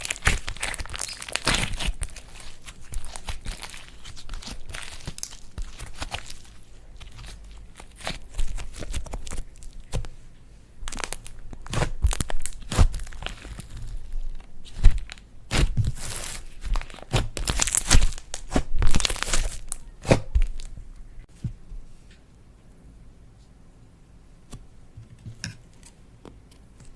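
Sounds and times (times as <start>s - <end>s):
slime squeezed and stretched: 0.0s - 10.0s, 14.7s - 20.7s
slime crackling and popping: 0.0s - 10.1s, 10.9s - 20.7s.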